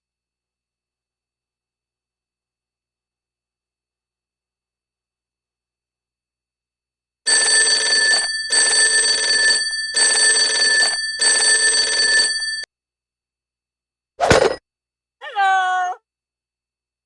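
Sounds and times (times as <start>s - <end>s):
telephone bell ringing: 7.3s - 12.7s.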